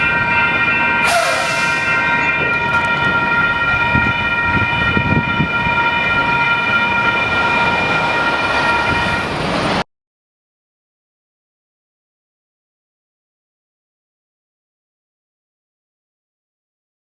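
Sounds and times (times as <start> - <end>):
freight train rumbling past: 0.0 - 9.8
steady high tone: 0.0 - 9.8.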